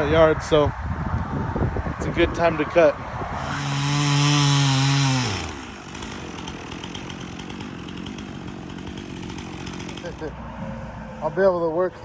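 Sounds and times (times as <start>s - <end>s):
chainsaw revving and idling: 3.3s - 10.4s.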